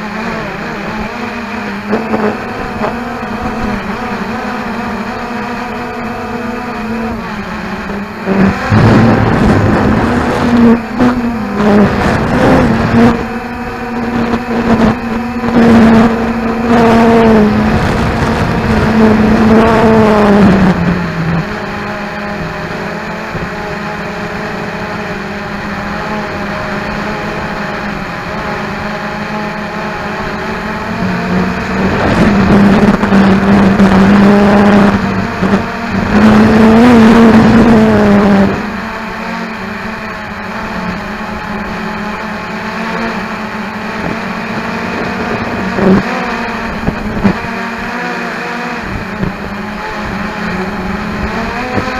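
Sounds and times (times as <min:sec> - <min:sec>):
drone motors whining: 0:00.0 - 0:51.9
wind buffeting microphone: 0:07.1 - 0:25.5, 0:26.1 - 0:38.8, 0:43.8 - 0:47.6, 0:48.8 - 0:51.9.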